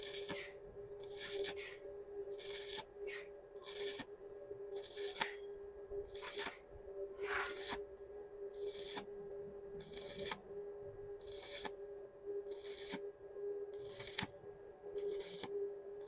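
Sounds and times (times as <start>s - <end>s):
welding arc crackling: 0.0s - 4.1s, 4.7s - 5.4s, 6.0s - 6.6s, 7.2s - 7.8s, 8.5s - 9.1s, 9.8s - 10.4s, 11.2s - 11.8s, 12.5s - 13.0s, 13.7s - 14.3s, 15.0s - 15.5s
steady hum: 0.0s - 16.0s.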